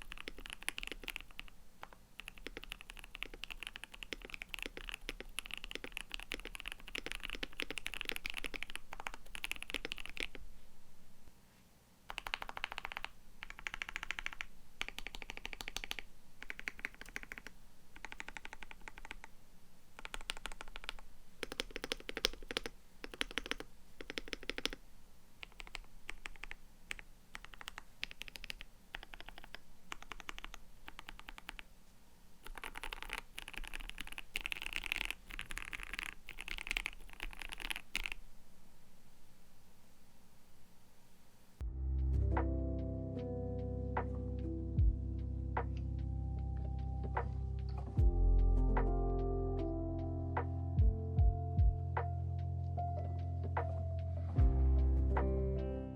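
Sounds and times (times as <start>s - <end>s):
mechanical keyboard typing: 0.0s - 10.4s, 12.1s - 19.4s, 20.0s - 24.8s, 25.4s - 31.7s, 32.4s - 38.2s.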